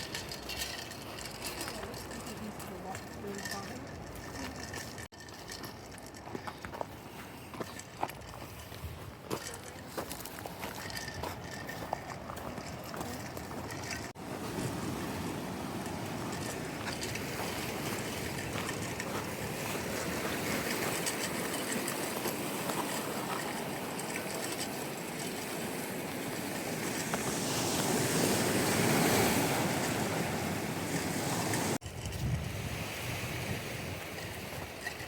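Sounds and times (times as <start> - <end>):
wind on microphone: 10.8 - 35.0
ocean surf washing in: 25.8 - 31.8.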